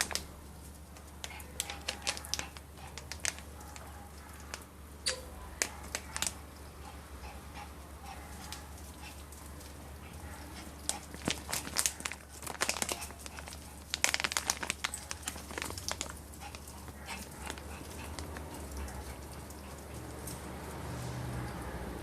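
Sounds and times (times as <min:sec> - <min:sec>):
packaging crinkling: 0:00.0 - 0:00.3, 0:01.0 - 0:04.6, 0:05.6 - 0:06.4, 0:10.8 - 0:18.4.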